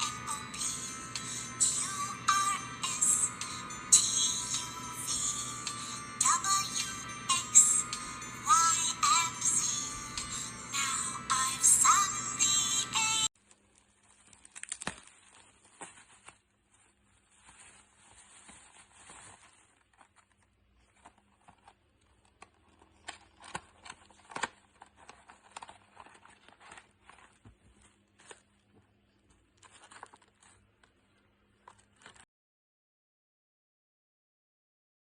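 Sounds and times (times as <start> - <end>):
music jingle: 0.0 - 13.3
faint steady hum: 0.0 - 32.2
faint crinkling: 13.4 - 32.3.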